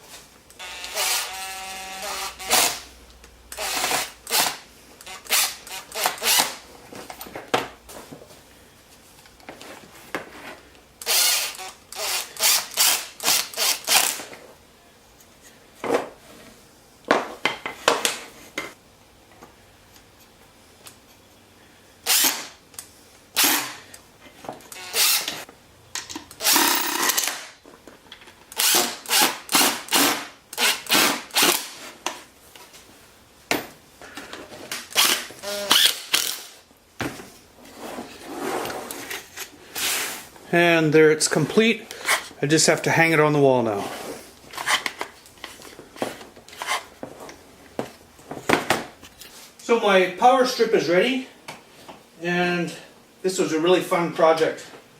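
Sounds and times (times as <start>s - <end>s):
power drill bursts: 0.6s - 2.9s, 3.6s - 6.6s, 11.0s - 14.2s, 22.0s - 22.5s, 23.4s - 23.8s, 24.7s - 25.4s, 26.4s - 27.5s, 28.5s - 31.8s, 34.9s - 36.6s.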